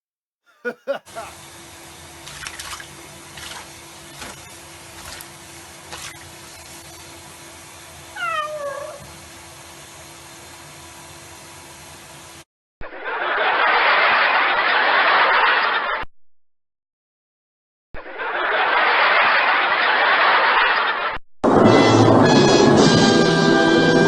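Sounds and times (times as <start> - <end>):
cat meowing: 8.2 - 9.1.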